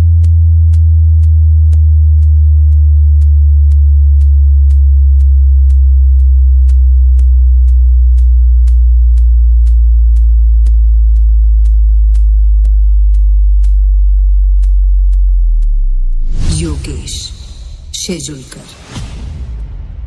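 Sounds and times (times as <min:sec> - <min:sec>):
sharp kick-like clicks: 0:00.0 - 0:16.5
deep sub-bass tone sliding down: 0:00.0 - 0:17.9.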